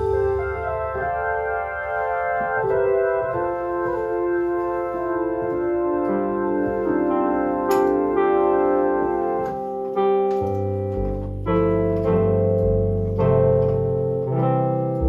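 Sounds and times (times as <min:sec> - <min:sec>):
deep bass notes: 0:00.0 - 0:09.3, 0:09.9 - 0:15.0
electronic keyboard chords: 0:00.0 - 0:15.0.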